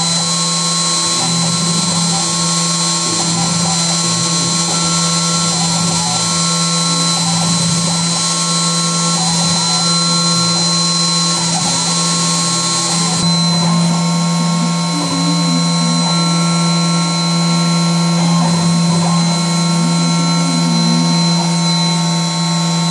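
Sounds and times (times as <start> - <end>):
cnc machine humming and whining: 0.0 - 22.9.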